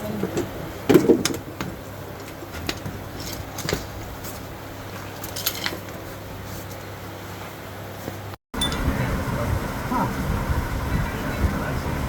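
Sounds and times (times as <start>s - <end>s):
steady low hum: 0.0s - 12.0s
hand tools clicking and clinking: 0.2s - 6.8s.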